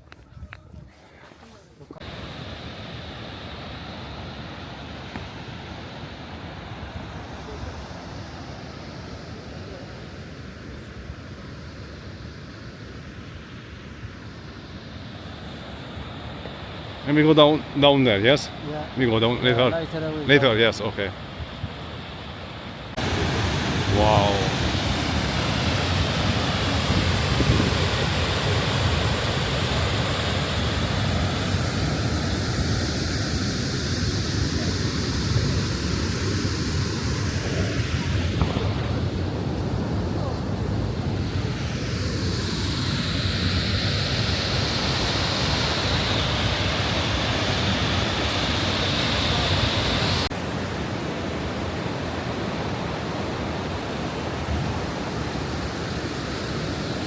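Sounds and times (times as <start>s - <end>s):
wind on microphone: 0.0s - 2.6s, 22.9s - 57.0s
waterfall rushing: 22.9s - 57.0s.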